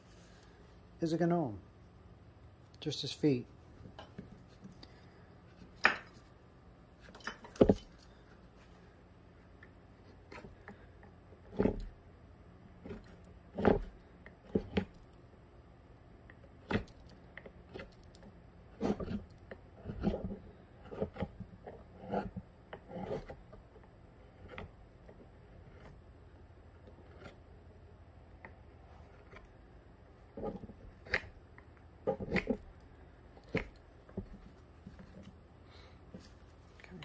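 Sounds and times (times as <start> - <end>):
carving tool scraping bark: 18.7 - 23.5, 26.8 - 27.4, 32.0 - 32.7.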